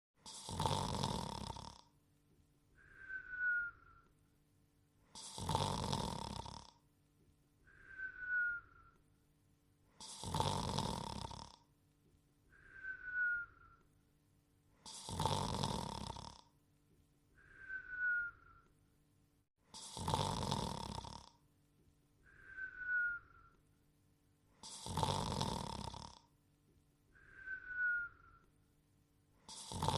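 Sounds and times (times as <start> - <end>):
cartoon snore and whistle: 0.2 - 1.9, 2.8 - 4.0, 5.1 - 6.8, 7.7 - 9.0, 10.0 - 11.7, 12.5 - 13.8, 14.8 - 16.5, 17.4 - 18.7, 19.7 - 21.4, 22.2 - 23.6, 24.6 - 26.3, 27.2 - 28.5, 29.4 - 29.9.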